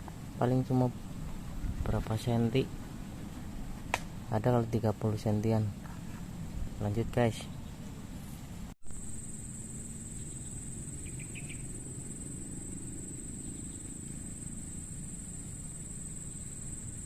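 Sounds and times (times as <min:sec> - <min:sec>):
crickets trilling: 0:08.8 - 0:17.0.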